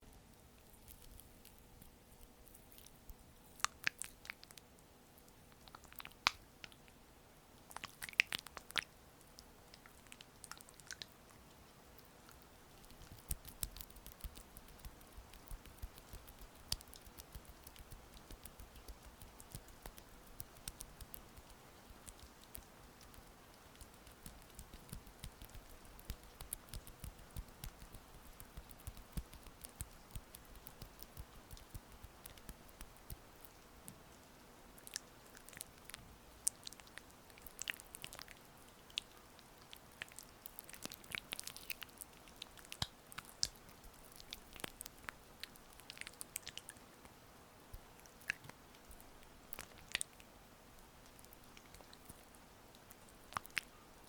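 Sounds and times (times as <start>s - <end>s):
faint rain patter: 0.0s - 54.0s
oiled hands massaging skin: 12.8s - 33.5s.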